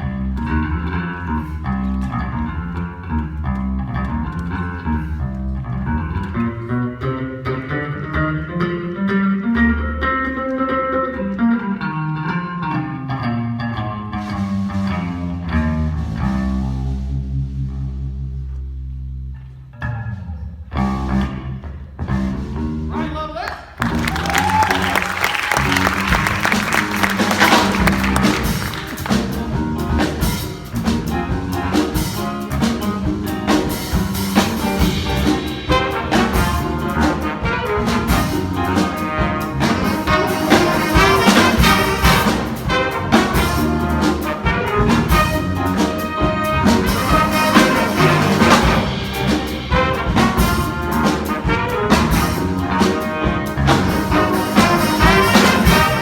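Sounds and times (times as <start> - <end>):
brass jazz music: 23.8 - 56.0.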